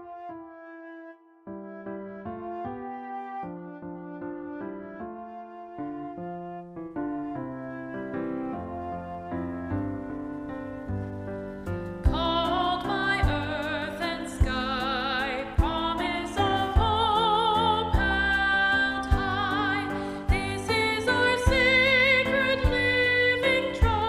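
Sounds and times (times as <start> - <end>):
piano accompaniment: 0.0 - 24.0
person singing a hymn: 12.1 - 24.0.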